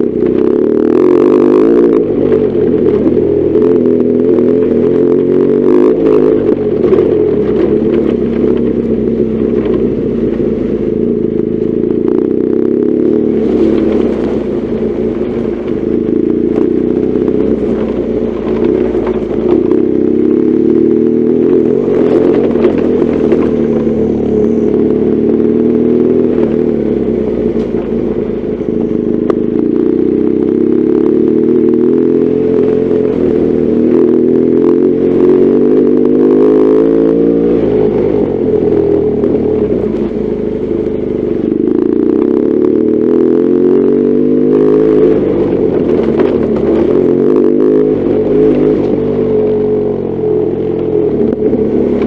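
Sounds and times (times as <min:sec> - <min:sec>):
motorcycle engine running: 0:00.0 - 0:52.0.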